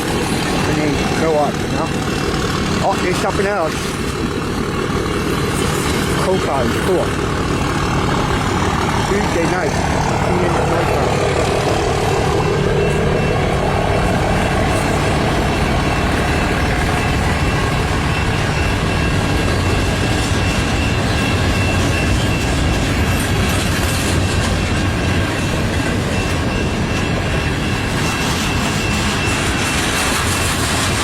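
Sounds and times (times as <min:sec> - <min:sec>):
high-pitched tone: 0:00.0 - 0:23.5
freight train wheels rumbling on rail: 0:00.0 - 0:31.0.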